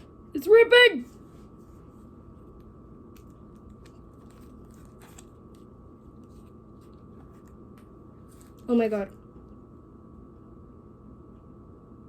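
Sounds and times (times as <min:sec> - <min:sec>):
faint steady hum: 0:00.0 - 0:12.0
wax paper crinkling and tearing: 0:03.6 - 0:05.6.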